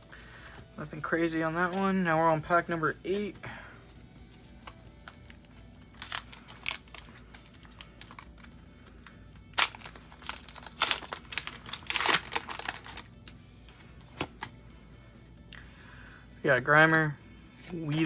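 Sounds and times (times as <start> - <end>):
foil wrapper crinkling and tearing: 4.6 - 13.4.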